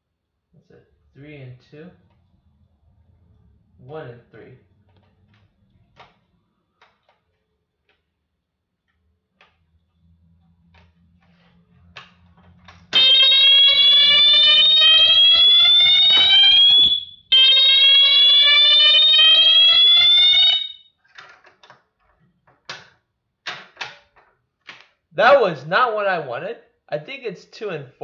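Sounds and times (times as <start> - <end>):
fire alarm horn rising sweeps: 12.9 - 20.9.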